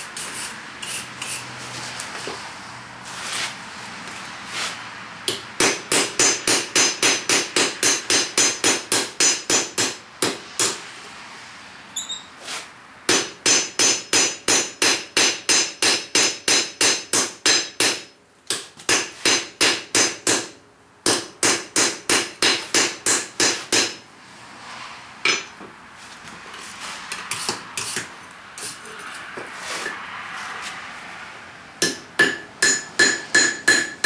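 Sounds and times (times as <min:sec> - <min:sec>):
steady background noise: 0:00.0 - 0:34.0
hammer striking steel on anvil: 0:05.3 - 0:10.8, 0:13.1 - 0:24.0, 0:25.2 - 0:25.6, 0:31.8 - 0:34.0.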